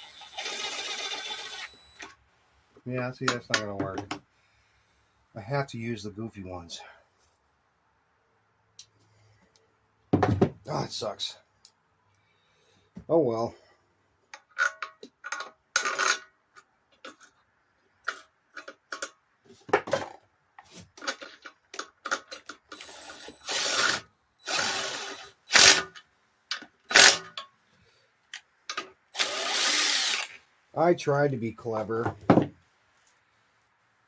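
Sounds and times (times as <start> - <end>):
tools and metal parts clinking: 14.4 - 17.4.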